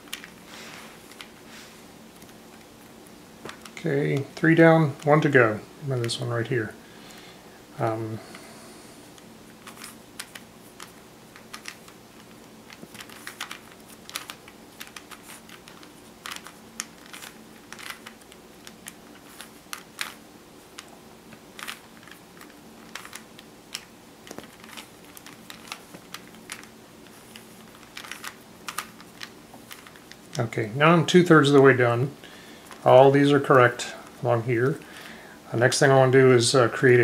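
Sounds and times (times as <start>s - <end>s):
puzzle cube layers clicking: 9.6s - 20.9s.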